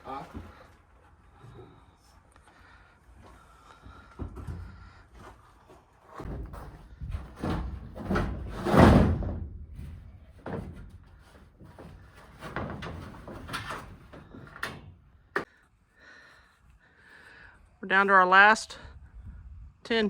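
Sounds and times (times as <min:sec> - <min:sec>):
tin roofing panels rattling: 0:06.2 - 0:15.5.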